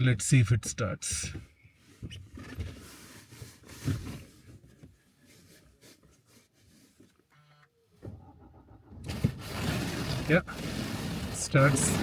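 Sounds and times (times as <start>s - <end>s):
car engine starting: 8.0s - 12.0s.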